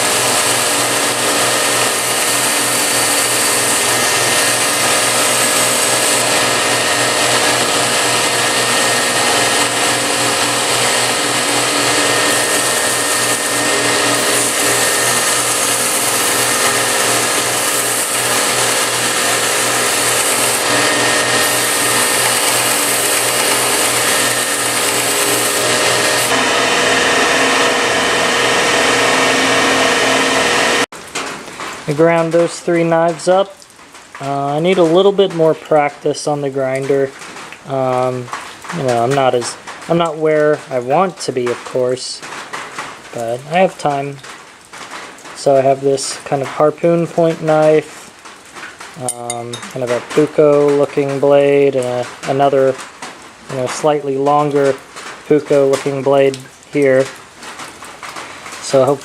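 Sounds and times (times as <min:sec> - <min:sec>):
belt grinder motor humming: 0:00.0 - 0:30.9
blade hissing on abrasive belt: 0:00.0 - 0:30.9.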